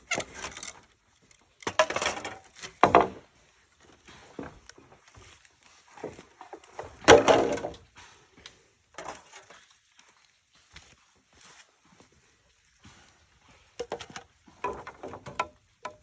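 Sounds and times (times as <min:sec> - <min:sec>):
bamboo knocking and scraping: 0:00.0 - 0:09.8, 0:12.9 - 0:16.0.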